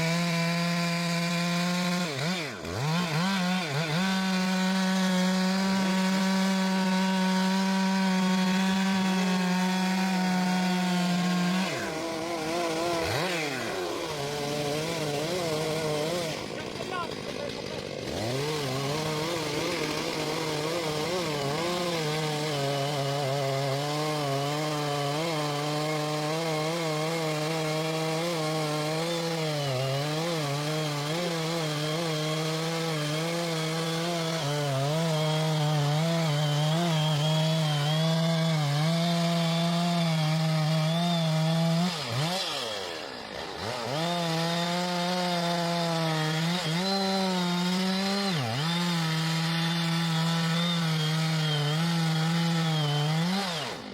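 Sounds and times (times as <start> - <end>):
chainsaw cutting wood: 0.0 - 53.9.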